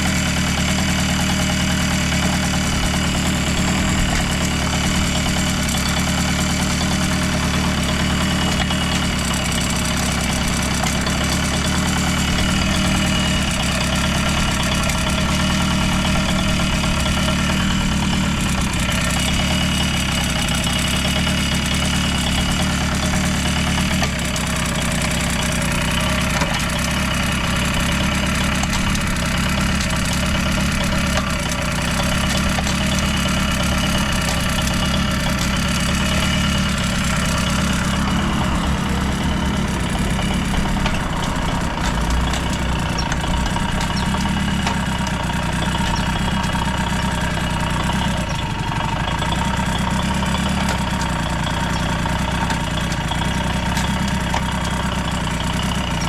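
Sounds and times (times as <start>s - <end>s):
two-stroke engine idling: 0.0s - 56.0s.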